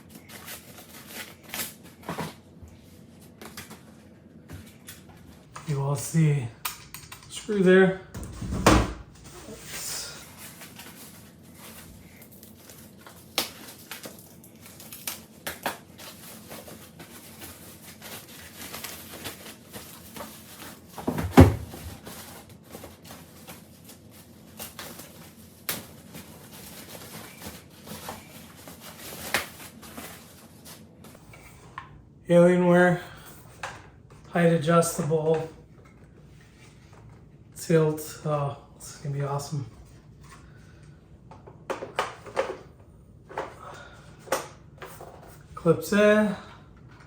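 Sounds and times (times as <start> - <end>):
parts clicking and knocking: 6.6 - 7.5
loud thump: 8.2 - 9.2.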